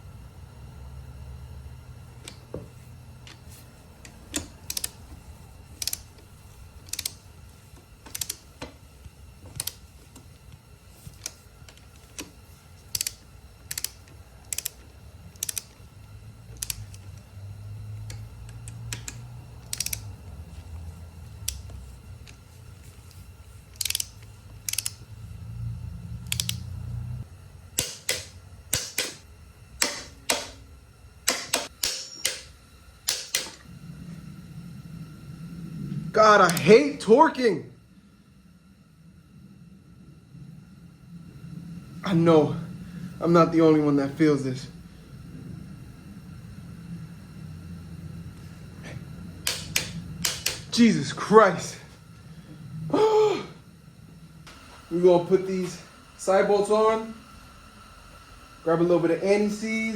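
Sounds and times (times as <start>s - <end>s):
low hum: 0.0s - 59.9s
ratcheting torque wrench clicking: 4.0s - 5.1s, 5.7s - 6.2s, 6.8s - 7.2s, 8.0s - 8.8s, 9.5s - 9.8s, 11.1s - 15.8s, 16.5s - 17.3s, 18.0s - 20.2s, 21.4s - 22.4s, 23.7s - 25.0s, 26.2s - 26.7s, 27.8s - 29.2s, 31.3s - 33.6s, 49.4s - 50.8s.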